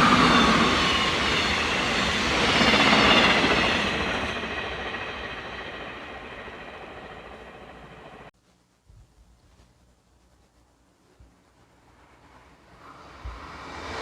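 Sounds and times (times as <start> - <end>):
train wheels rushing on rails: 0.0 - 8.3, 12.6 - 14.0.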